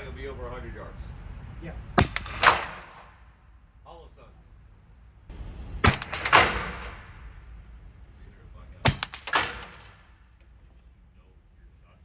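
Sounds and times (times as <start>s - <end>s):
suppressed rifle shots: 2.0s - 3.2s, 5.8s - 7.3s, 8.8s - 10.4s.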